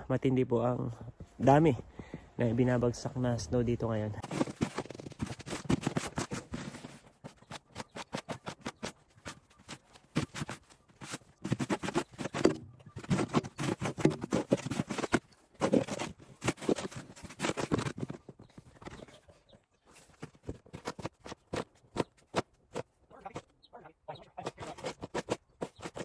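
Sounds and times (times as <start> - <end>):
crunching in deep snow: 0.9 - 19.1.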